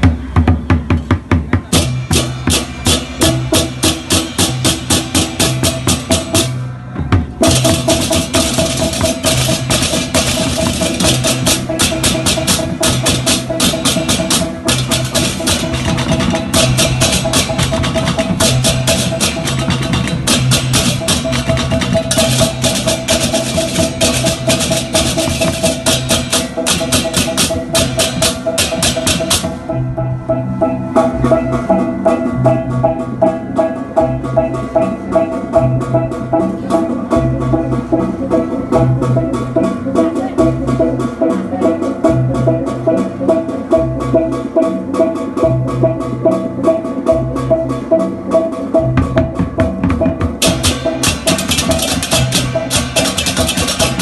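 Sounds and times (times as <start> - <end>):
drums: 0.0 - 54.0
cymbals clashing: 1.7 - 37.5, 48.8 - 54.0.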